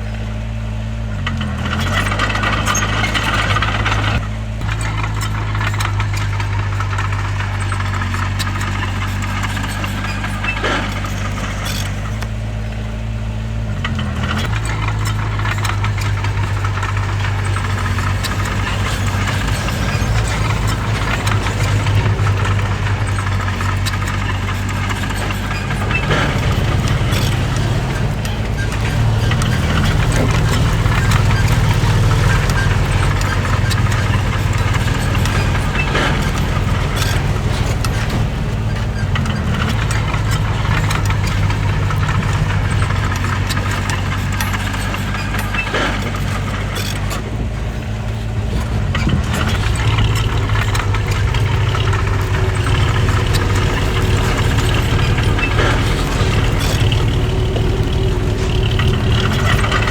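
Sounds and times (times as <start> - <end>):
heavy diesel engine running: 0.0 - 59.9
metal clanks: 1.1 - 59.9.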